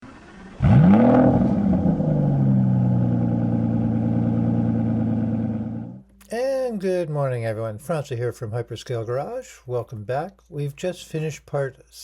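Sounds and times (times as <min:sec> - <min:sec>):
car engine starting and idling: 0:00.0 - 0:06.1.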